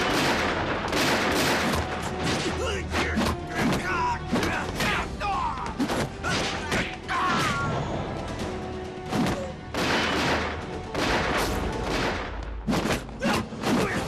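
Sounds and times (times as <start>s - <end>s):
rapid gunfire: 0.0s - 2.5s, 9.7s - 12.4s
background music: 0.0s - 14.0s.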